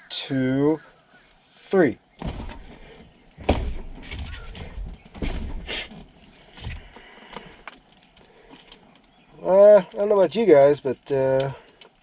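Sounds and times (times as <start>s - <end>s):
steering wheel clunking and rattling: 2.1s - 7.1s.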